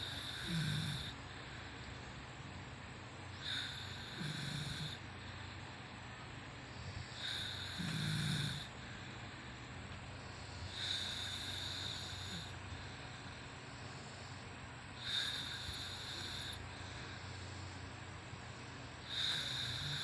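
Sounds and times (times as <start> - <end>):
woman snoring: 0.0 - 1.2, 3.4 - 5.0, 7.1 - 8.7, 10.6 - 12.6, 15.0 - 16.6, 19.1 - 20.0.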